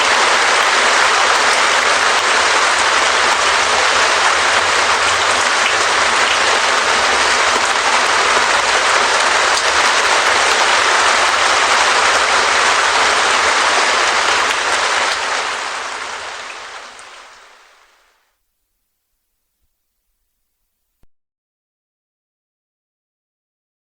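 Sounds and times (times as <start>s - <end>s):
rain drumming on plastic sheet: 0.0s - 18.4s.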